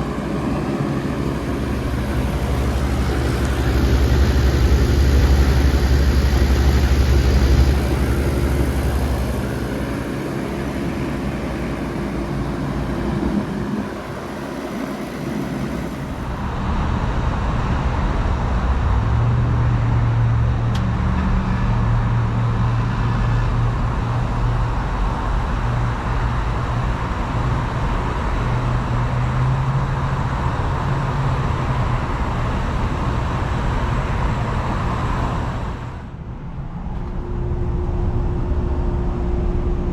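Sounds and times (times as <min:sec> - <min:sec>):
deep compressor hum: 0:00.0 - 0:25.6, 0:34.2 - 0:39.9
heat pump humming and whining: 0:00.0 - 0:39.9
outdoor unit fan running: 0:00.0 - 0:39.9.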